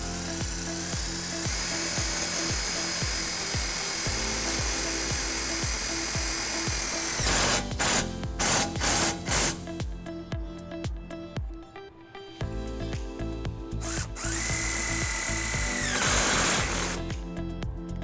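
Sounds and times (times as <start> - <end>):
power drill driving screws: 0.0 - 9.7, 13.8 - 17.1.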